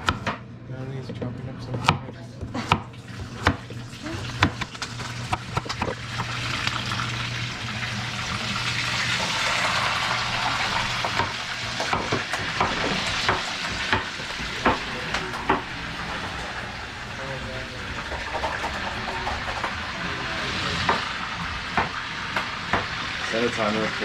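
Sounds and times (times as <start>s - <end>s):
food sizzling in a frying pan: 3.0s - 17.1s.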